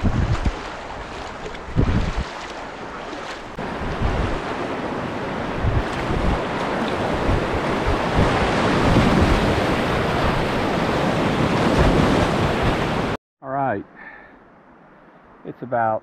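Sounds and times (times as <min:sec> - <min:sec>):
wind buffeting microphone: 0:00.0 - 0:02.4, 0:03.5 - 0:04.6, 0:05.4 - 0:12.8
river water rushing: 0:00.0 - 0:07.9.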